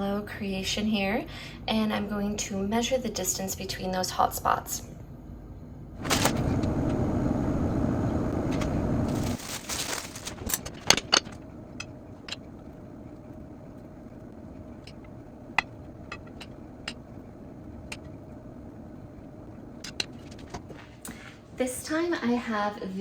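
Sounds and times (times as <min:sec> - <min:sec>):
faint steady hum: 0:00.0 - 0:23.0
rustling: 0:09.0 - 0:12.6.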